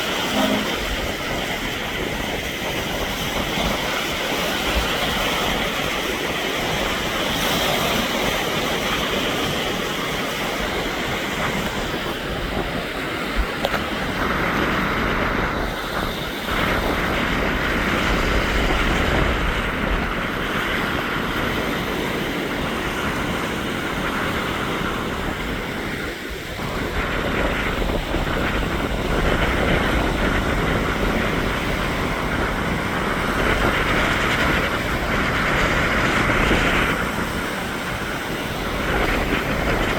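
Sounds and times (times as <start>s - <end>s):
waves breaking on shore: 0.0s - 39.9s
wind buffeting microphone: 0.0s - 39.9s.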